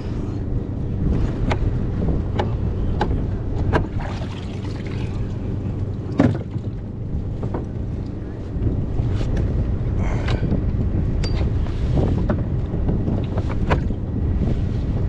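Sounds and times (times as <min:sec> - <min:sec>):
wind rumbling on microphone: 0:00.0 - 0:15.0
water slapping against kayak hull: 0:03.6 - 0:07.7
sharp splashes: 0:03.9 - 0:05.6.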